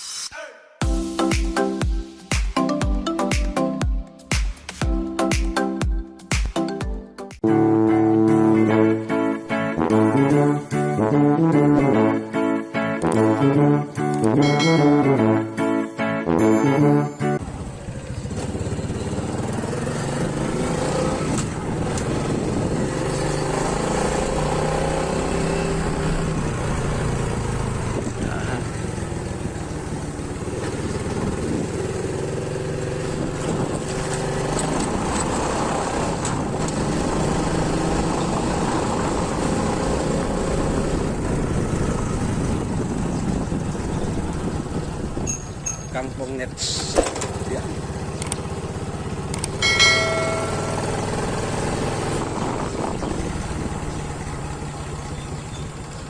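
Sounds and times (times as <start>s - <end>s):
vehicle engine running: 17.4s - 56.0s.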